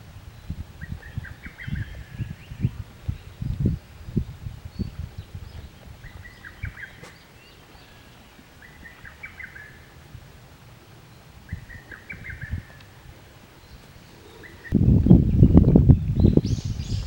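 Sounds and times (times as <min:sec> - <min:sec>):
songbird singing: 0:00.0 - 0:17.0
soft thumps: 0:06.9 - 0:07.3.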